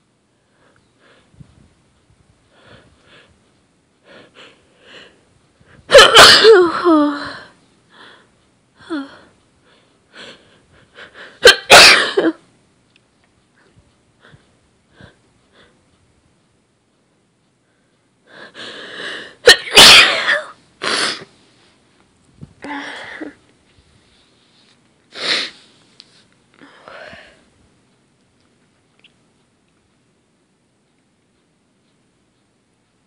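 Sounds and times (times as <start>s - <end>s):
woman sneezing: 5.9s - 6.9s, 11.4s - 12.4s, 19.4s - 21.3s
short sniffs: 24.0s - 26.3s.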